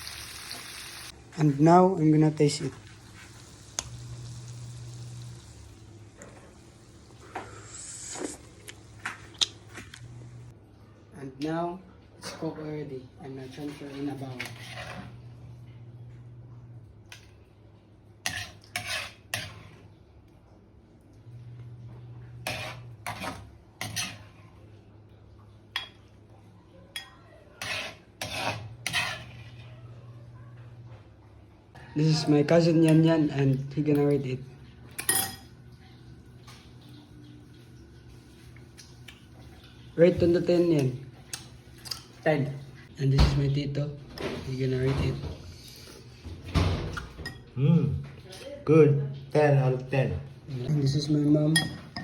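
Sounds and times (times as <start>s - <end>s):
low steady hum: 0.2s - 27.4s
spoon scraping a pot: 13.4s - 15.3s, 18.2s - 19.9s, 22.2s - 24.5s, 27.0s - 29.8s.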